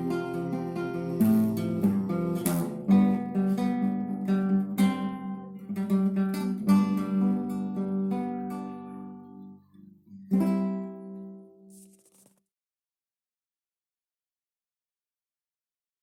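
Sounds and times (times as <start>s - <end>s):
acoustic guitar chords: 0.0s - 12.1s.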